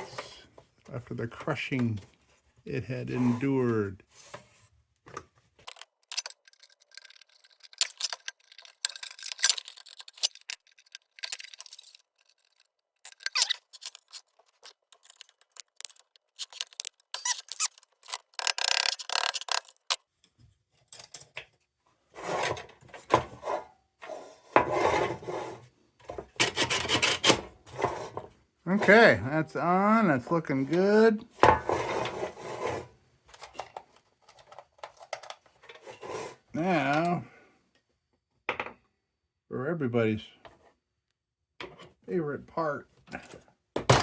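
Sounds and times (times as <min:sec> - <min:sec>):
metal lantern scraping and squeaking: 0:05.6 - 0:20.0, 0:31.5 - 0:32.9.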